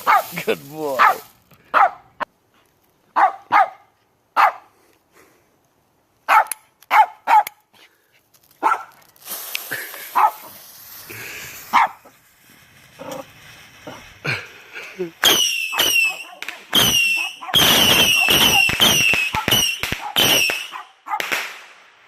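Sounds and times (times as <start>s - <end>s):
dog barking: 0.0s - 0.3s, 1.0s - 2.1s, 3.1s - 4.7s, 6.3s - 7.6s, 8.6s - 8.9s, 10.2s - 10.5s, 11.7s - 12.0s, 16.0s - 18.6s, 19.4s - 21.2s
steady hiss: 0.0s - 1.6s, 8.3s - 15.8s.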